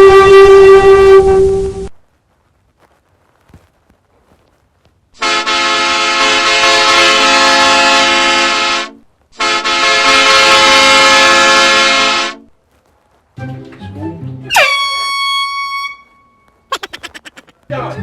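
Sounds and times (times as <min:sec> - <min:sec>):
air horn blasts: 0:00.0 - 0:01.9, 0:05.2 - 0:12.5, 0:14.5 - 0:16.4.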